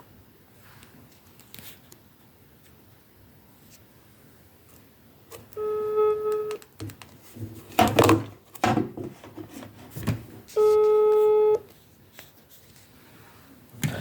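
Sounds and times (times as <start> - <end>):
phone call tone: 5.5 - 6.6, 10.5 - 11.7.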